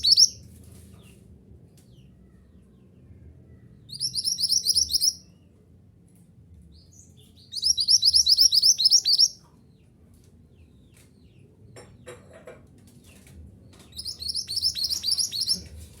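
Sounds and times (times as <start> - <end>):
songbird chattering song: 0.0 - 0.4, 1.8 - 5.5, 6.8 - 10.0, 13.8 - 15.9.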